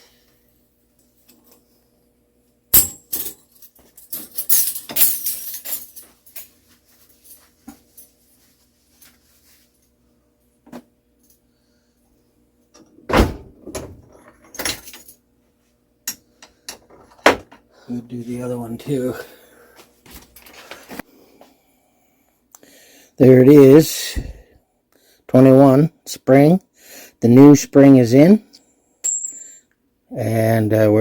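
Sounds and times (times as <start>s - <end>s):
metal parts rattling and scraping: 2.8s - 6.5s.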